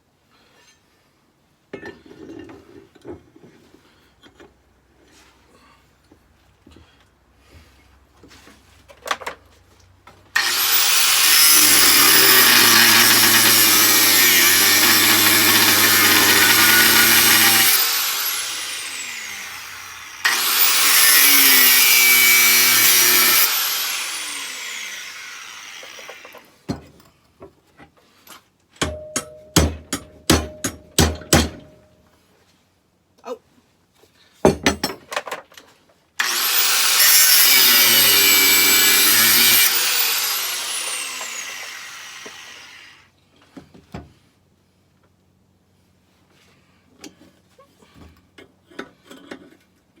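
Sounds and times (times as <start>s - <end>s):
angle grinder cutting steel: 10.4s - 26.4s, 36.2s - 43.0s.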